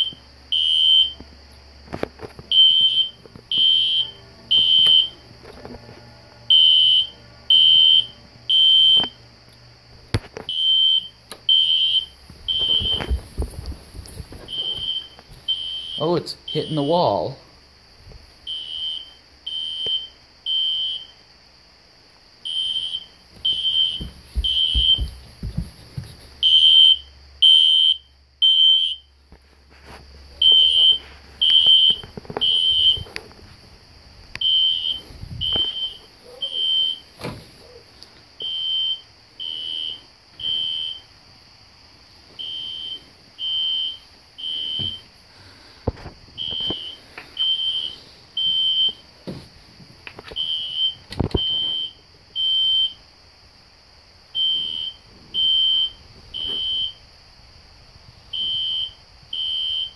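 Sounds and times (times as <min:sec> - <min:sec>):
fire alarm horn beeping: 0:00.0 - 0:01.2, 0:02.5 - 0:05.2, 0:06.2 - 0:09.1, 0:10.5 - 0:13.1, 0:14.5 - 0:17.4, 0:26.4 - 0:29.0, 0:30.4 - 0:33.1.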